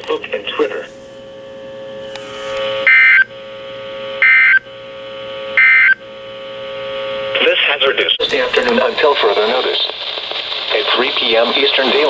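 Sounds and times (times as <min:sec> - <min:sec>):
hum with hiss: 0:00.0 - 0:11.1.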